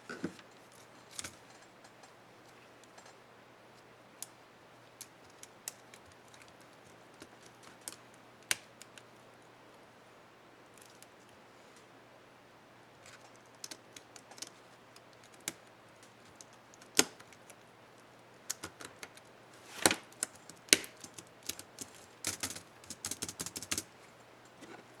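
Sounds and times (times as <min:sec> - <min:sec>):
laptop keys clicking: 0:20.2 - 0:23.9.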